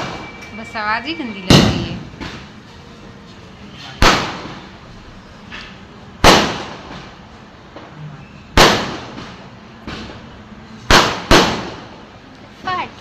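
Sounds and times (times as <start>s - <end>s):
fireworks bangs: 1.5s - 2.2s, 4.0s - 4.7s, 6.2s - 7.2s, 8.6s - 9.4s, 10.9s - 12.0s.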